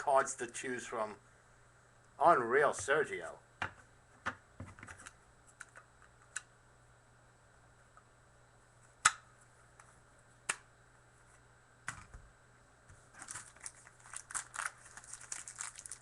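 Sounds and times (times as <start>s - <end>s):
plastic packaging crinkling: 13.1s - 16.0s.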